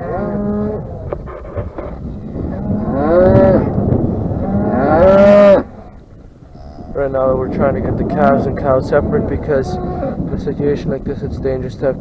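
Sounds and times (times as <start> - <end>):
cattle mooing: 0.0 - 1.4, 2.2 - 10.4.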